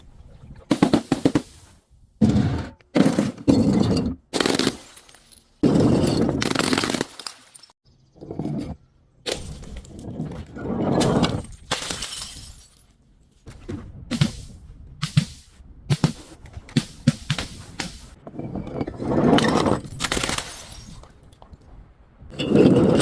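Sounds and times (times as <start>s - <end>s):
glass bottles breaking: 11.2s - 12.9s.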